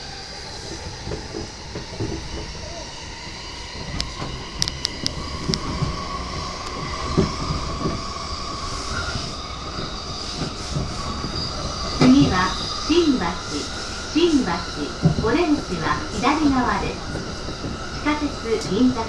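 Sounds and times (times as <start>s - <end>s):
train wheel and track rumble: 0.0s - 19.0s
thin steady whine: 2.6s - 19.0s
sharp clicks: 4.0s - 5.7s.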